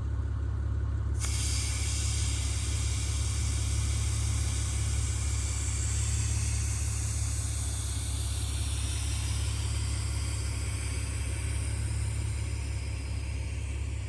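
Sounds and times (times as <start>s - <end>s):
car engine and road rumble: 0.0s - 14.0s.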